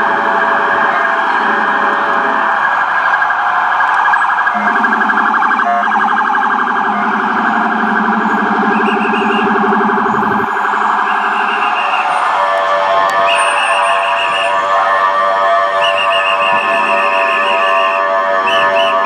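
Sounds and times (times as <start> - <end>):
ambulance siren warbling: 0.0 - 19.0
deep pulsing low-frequency siren: 0.0 - 19.0.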